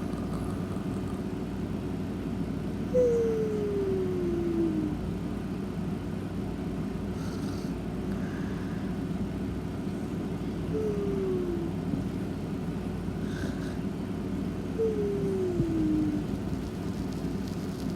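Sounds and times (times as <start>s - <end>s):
pet snoring: 0.0s - 1.2s, 7.2s - 7.8s, 13.2s - 13.8s.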